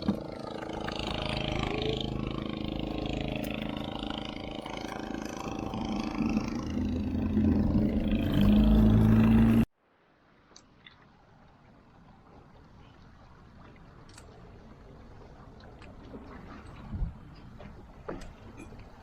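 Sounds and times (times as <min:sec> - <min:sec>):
boat engine running: 0:00.0 - 0:09.7
faint water wash: 0:00.0 - 0:19.0.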